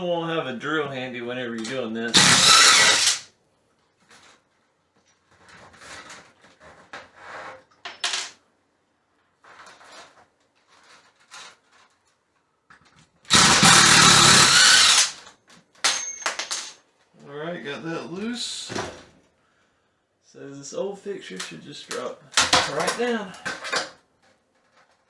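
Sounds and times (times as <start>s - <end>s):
power drill running: 2.1s - 3.2s, 13.3s - 15.2s
knocks and rattles of handling: 9.3s - 17.2s, 21.8s - 25.0s.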